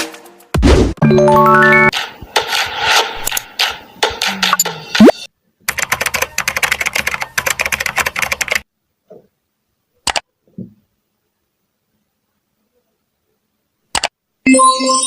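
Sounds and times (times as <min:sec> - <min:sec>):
rapid typing on a keyboard: 0:05.7 - 0:08.7
sharp click: 0:13.9 - 0:14.2.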